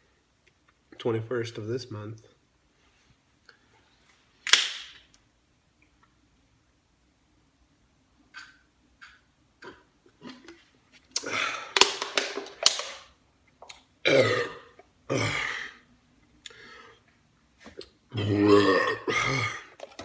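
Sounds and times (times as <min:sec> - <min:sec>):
breathy bursts: 0:11.2 - 0:11.8
man belching: 0:14.0 - 0:15.8, 0:18.1 - 0:19.8.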